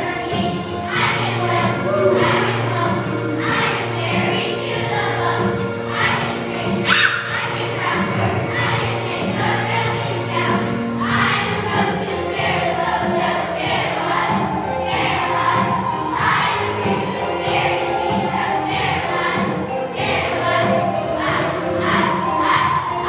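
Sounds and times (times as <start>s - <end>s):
children's choir singing: 0.0s - 23.0s
musical accompaniment: 0.0s - 23.0s.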